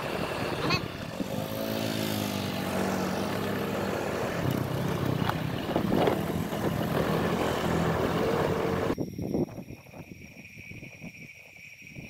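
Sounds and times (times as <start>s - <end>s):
vehicle engine running: 0.0s - 9.0s.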